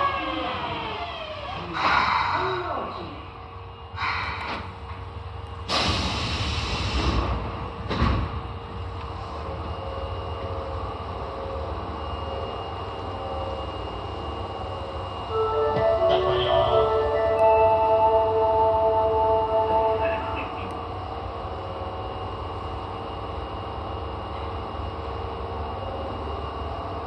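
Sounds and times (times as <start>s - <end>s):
subway car hum with whine: 0.0s - 27.0s
rush of air from doors: 1.6s - 2.7s, 3.9s - 4.9s, 5.7s - 7.6s.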